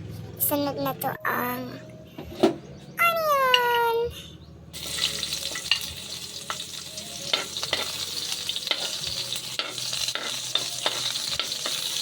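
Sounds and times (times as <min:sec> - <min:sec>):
onion sizzling in hot oil: 0:04.8 - 0:12.0
utensil scraping a pan: 0:07.3 - 0:12.0.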